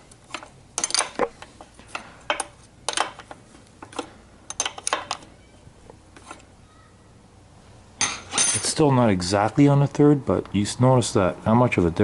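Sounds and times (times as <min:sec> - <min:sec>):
wrench clinking on bolt: 0:00.3 - 0:05.3.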